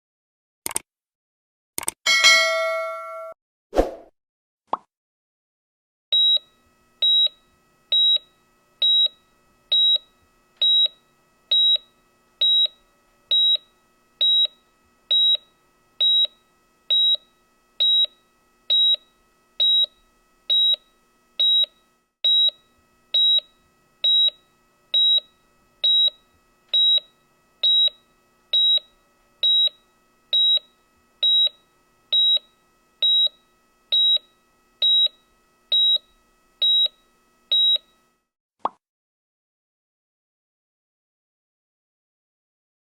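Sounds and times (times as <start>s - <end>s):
heart monitor beeping: 6.2s - 37.9s.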